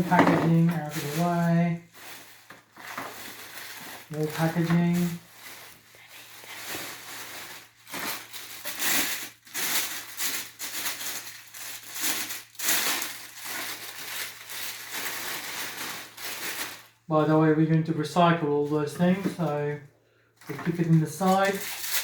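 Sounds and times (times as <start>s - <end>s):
packaging rustling and crinkling: 0.0s - 17.1s, 20.4s - 22.0s.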